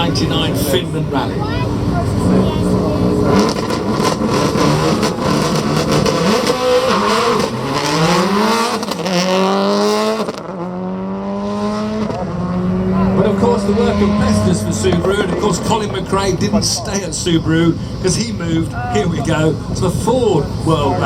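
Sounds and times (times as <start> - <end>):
rally car engine accelerating hard: 0.4 - 17.2.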